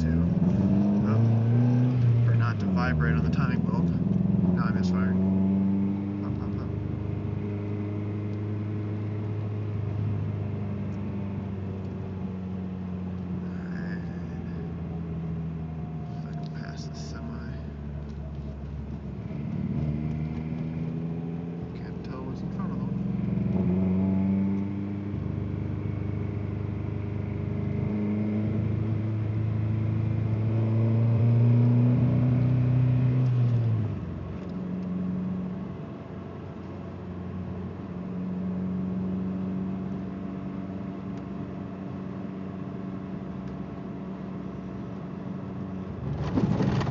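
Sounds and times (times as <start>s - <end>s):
car engine pulling under load: 42.4s - 46.9s
car engine misfiring: 46.0s - 46.9s.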